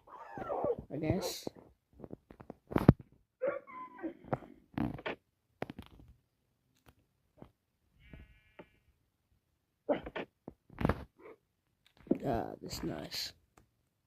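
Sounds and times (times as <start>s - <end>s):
dog whining: 0.0s - 1.3s, 3.4s - 4.3s.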